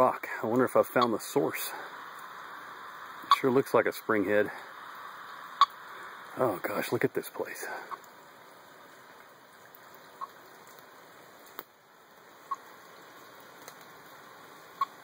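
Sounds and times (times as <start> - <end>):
stream trickling: 0.0 - 15.0.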